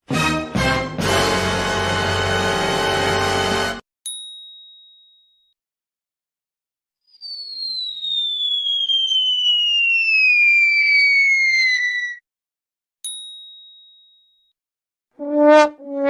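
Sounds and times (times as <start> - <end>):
descending cartoon whistle: 7.0 - 12.2.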